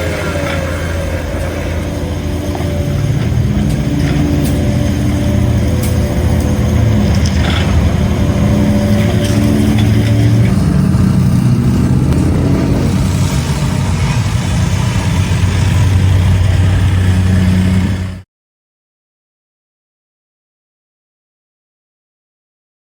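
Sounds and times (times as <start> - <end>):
heavy engine running: 0.0 - 18.2.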